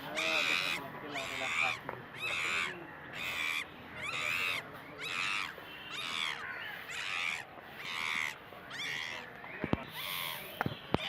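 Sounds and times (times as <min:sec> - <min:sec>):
animal harsh calls: 0:00.0 - 0:10.5.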